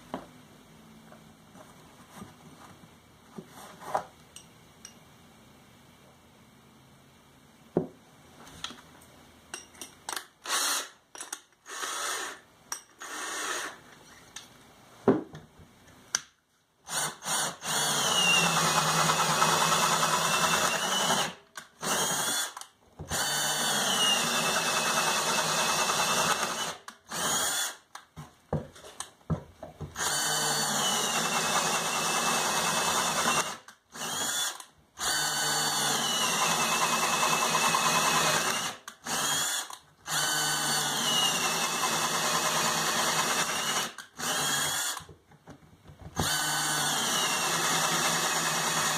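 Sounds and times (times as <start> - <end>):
electric drill cutting wood: 10.4 - 11.0, 11.7 - 12.4, 13.0 - 13.8, 16.9 - 27.8, 30.0 - 45.1, 46.2 - 48.9.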